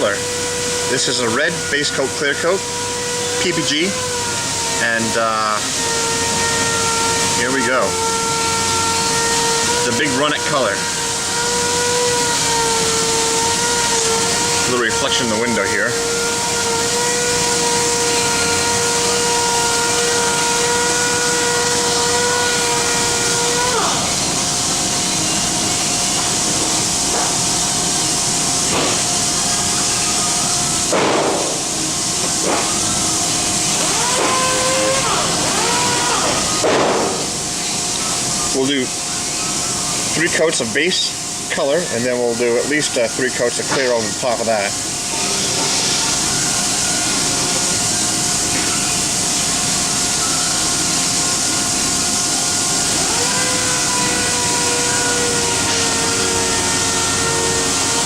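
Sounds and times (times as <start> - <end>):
spray gun air hiss: 44.8 - 53.1
thin whistling tone: 49.9 - 51.6.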